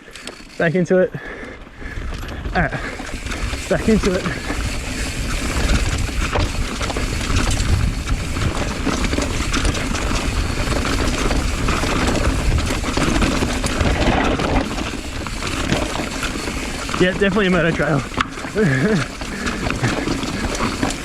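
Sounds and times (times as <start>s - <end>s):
small clicks and rattles: 0.0s - 21.0s
tyres crunching on loose dirt: 0.0s - 21.0s
wind rushing over microphone: 1.8s - 17.3s.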